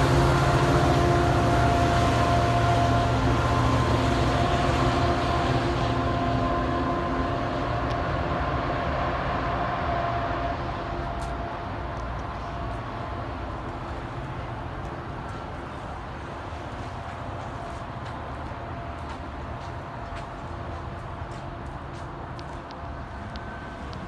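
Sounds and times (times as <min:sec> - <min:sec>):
train rumbling with whining tones: 0:00.0 - 0:24.0.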